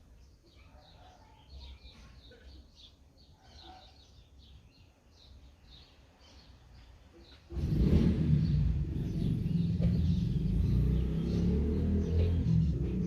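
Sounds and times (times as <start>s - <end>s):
birds chirping: 0.0s - 13.0s.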